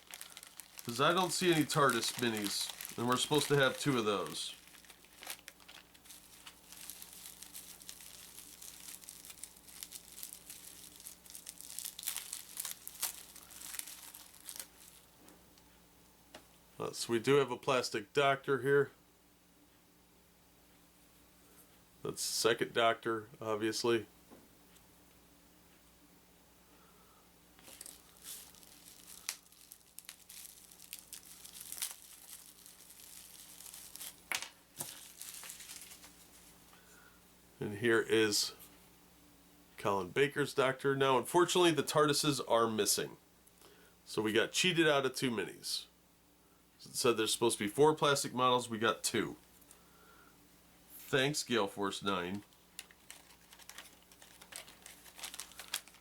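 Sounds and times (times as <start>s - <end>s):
packaging crinkling: 0.0s - 15.7s, 27.6s - 36.5s, 52.3s - 56.0s.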